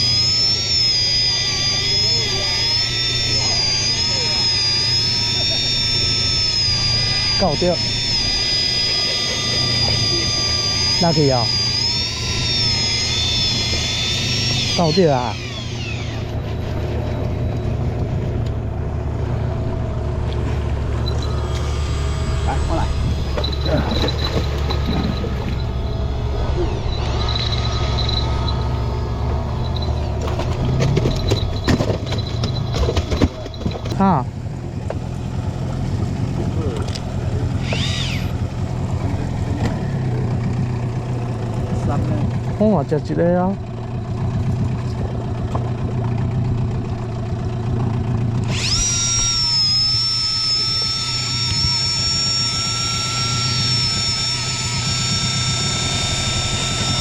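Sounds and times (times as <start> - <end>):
boat motor running: 0.0 - 57.0
high whine: 0.0 - 57.0.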